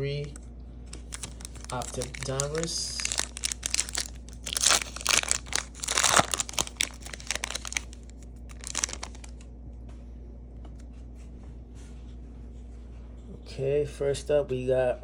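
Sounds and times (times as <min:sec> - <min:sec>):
cards rustling and clicking: 0:00.9 - 0:09.4
plastic wrapper tearing and crinkling: 0:00.9 - 0:09.4.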